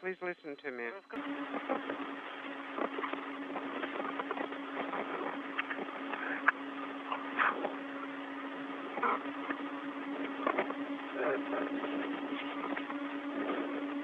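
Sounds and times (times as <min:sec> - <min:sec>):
radio static hiss: 0:00.0 - 0:14.0
steady low hum: 0:00.0 - 0:14.0
radio clicks and crackles: 0:00.6 - 0:14.0.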